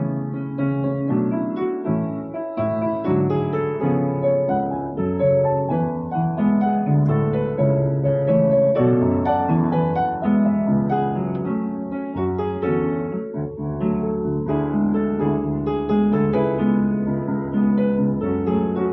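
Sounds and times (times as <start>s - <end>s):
piano playing: 0.0s - 18.9s.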